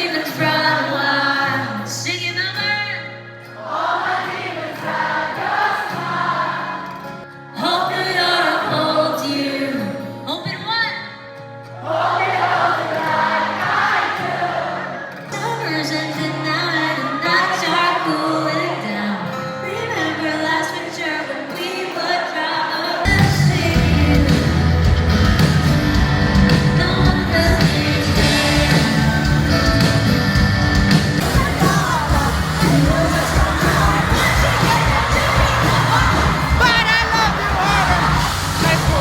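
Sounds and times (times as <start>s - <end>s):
band with heavy drums and bass: 23.1s - 39.0s.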